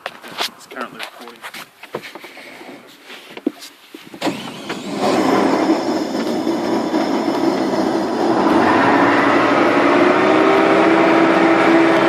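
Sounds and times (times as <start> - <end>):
steady mechanical noise: 4.2 - 12.0.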